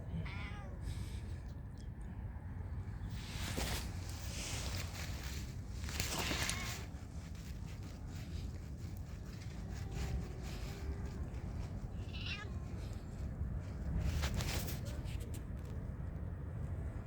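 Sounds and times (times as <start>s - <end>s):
cat meowing: 0.1s - 0.8s, 6.1s - 6.9s, 10.4s - 13.2s.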